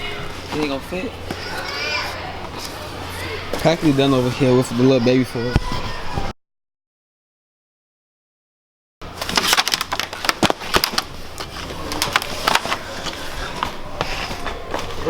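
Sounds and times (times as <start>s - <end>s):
steady low hum: 0.0s - 6.3s, 9.0s - 15.0s
diaper packs rustling and knocking: 9.1s - 15.0s.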